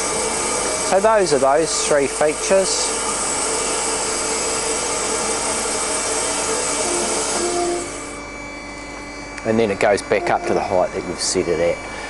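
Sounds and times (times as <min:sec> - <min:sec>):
machine running: 0:05.9 - 0:08.9, 0:09.7 - 0:12.0.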